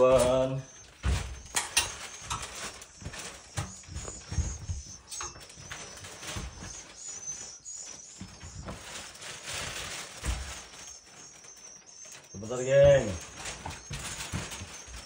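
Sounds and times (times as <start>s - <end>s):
footsteps: 0.0s - 15.0s
high wavering bird chirps: 0.0s - 15.0s
knocks and thuds: 0.1s - 6.9s, 10.1s - 10.8s, 12.7s - 15.0s.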